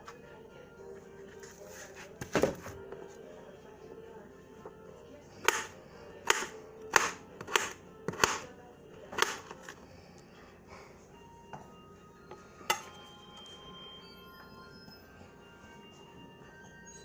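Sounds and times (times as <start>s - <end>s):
knife chopping on cutting board: 5.4s - 8.4s.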